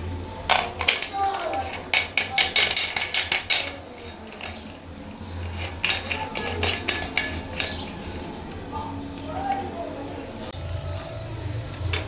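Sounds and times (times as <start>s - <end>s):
steady low hum: 0.0s - 12.0s
hard objects clinking: 0.5s - 8.7s.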